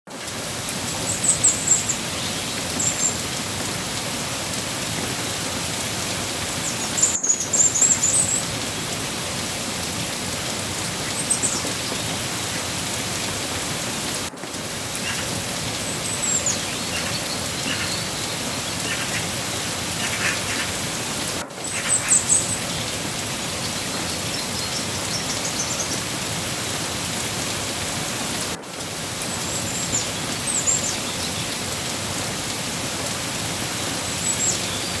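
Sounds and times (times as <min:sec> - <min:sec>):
steady rain falling: 0:00.1 - 0:35.0.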